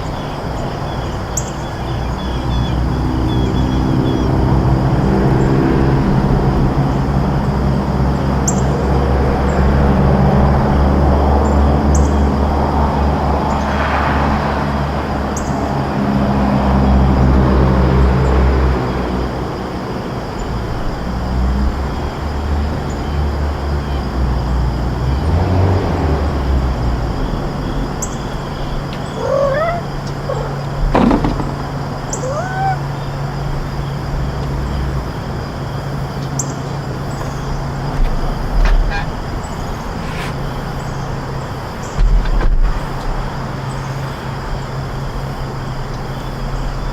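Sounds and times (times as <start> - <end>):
vehicle engine humming: 20.7 - 41.8
cat crying: 29.1 - 30.7, 32.1 - 33.1.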